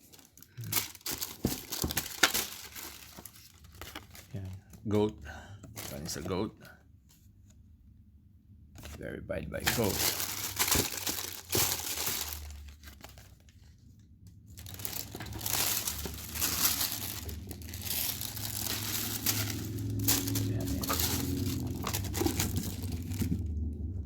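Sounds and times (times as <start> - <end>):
paper crinkling and rustling: 0.0 - 4.5, 5.7 - 6.5, 9.6 - 23.5.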